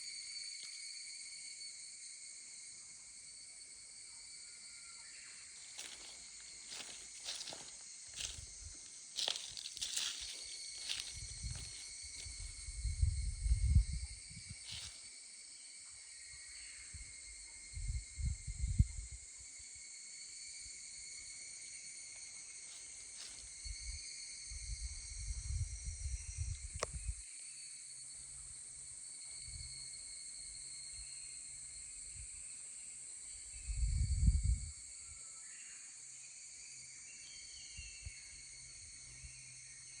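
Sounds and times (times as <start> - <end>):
chorus of cicadas: 0.0 - 40.0
low rumbles on microphone: 12.6 - 14.6.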